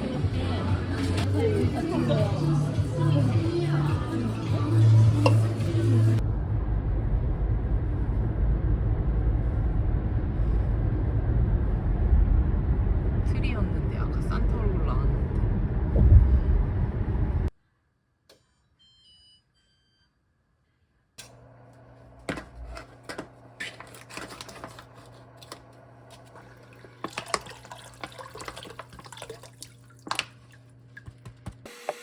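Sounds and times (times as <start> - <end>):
low steady hum: 0.0 - 17.6
water running and dripping: 26.1 - 31.2.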